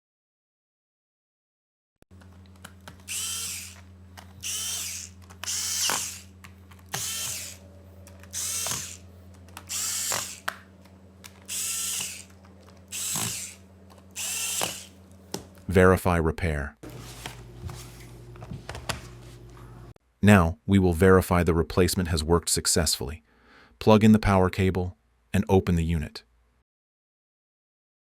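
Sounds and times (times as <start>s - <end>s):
electric screwdriver whirring: 2.9s - 10.6s, 11.2s - 15.0s.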